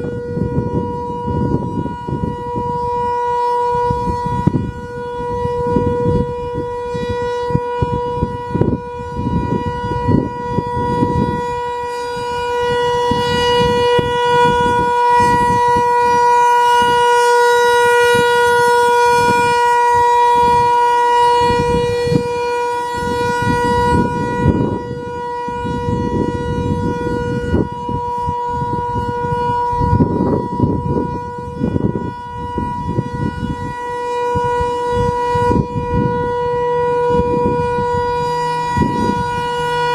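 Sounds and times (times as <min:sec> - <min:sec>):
gusty wind on microphone: 0:00.0 - 0:39.9
outdoor warning siren steady tone: 0:00.0 - 0:39.9.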